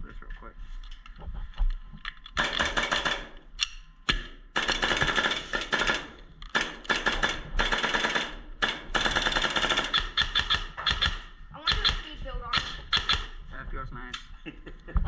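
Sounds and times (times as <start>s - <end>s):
airsoft gun firing bursts: 2.4s - 3.5s, 4.1s - 13.4s.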